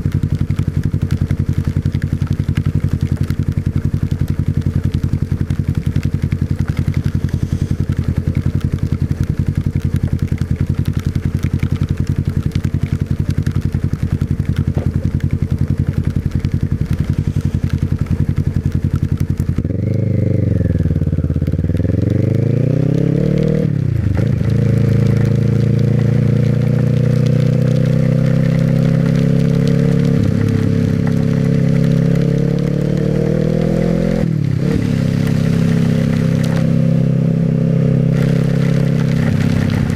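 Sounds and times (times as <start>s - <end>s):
small motorcycle engine accelerating: 16.6s - 39.9s.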